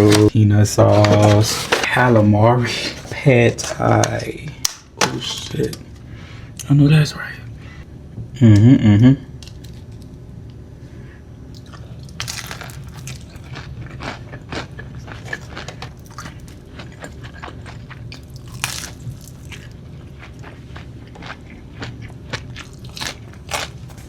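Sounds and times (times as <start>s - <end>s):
chewing crisp food crunches: 11.5s - 24.0s.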